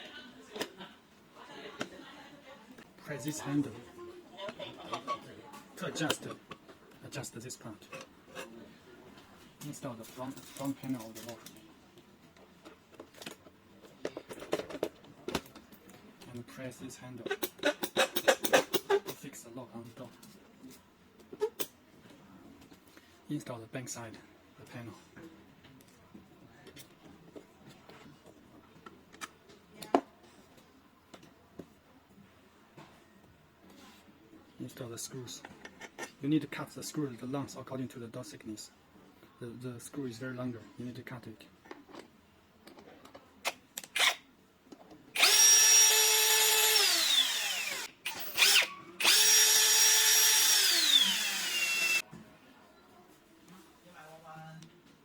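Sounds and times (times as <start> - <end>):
power tool whining: 45.2 - 52.0.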